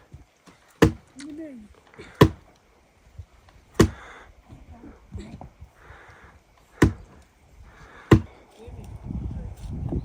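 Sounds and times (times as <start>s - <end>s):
loud knocking strikes: 0.8s - 1.0s.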